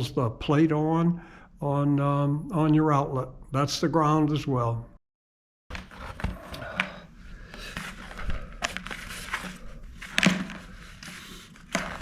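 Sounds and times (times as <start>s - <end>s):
objects moved on work surface: 5.7s - 12.0s.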